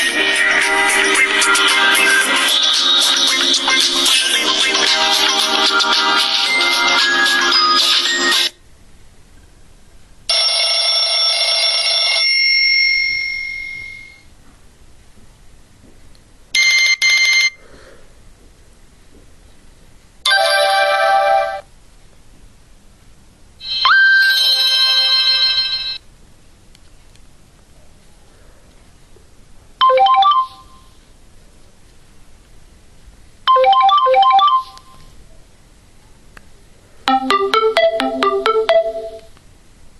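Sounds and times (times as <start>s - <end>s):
phone chime: 20.3s - 21.6s, 29.8s - 30.8s, 33.5s - 35.0s, 37.1s - 39.3s.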